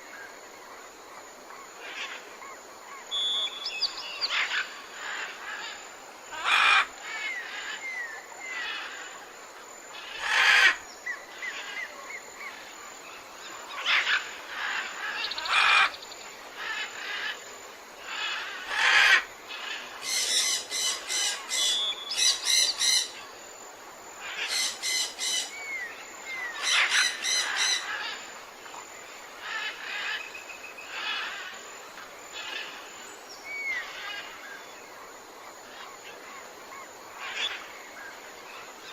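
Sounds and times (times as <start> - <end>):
steady background hiss: 0.0 - 38.9
soft downward-slurred whistles: 3.2 - 3.9.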